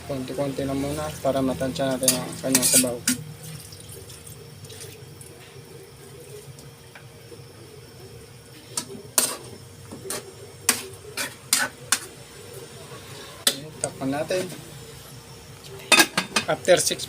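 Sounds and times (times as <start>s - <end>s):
water poured into pot: 3.4s - 5.1s.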